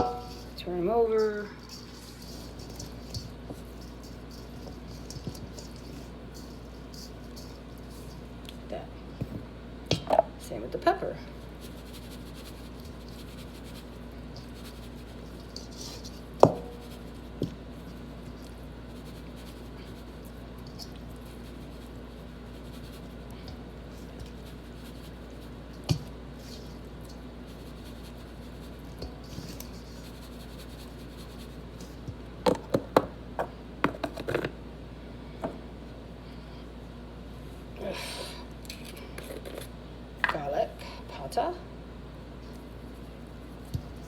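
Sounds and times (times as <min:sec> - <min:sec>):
steady low hum: 0:00.0 - 0:44.0
kitchen knocks and taps: 0:32.5 - 0:34.5.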